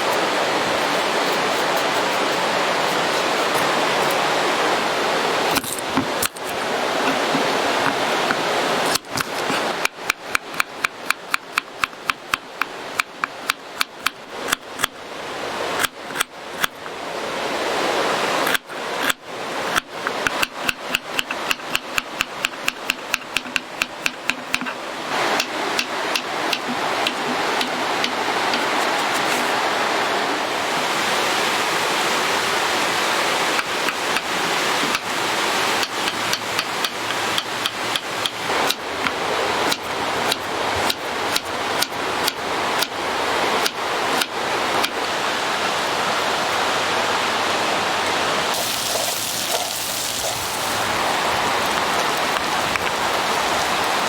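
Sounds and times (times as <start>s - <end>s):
steady rushing hiss: 0.0s - 9.9s, 24.7s - 54.0s
chopping on a cutting board: 18.5s - 24.8s.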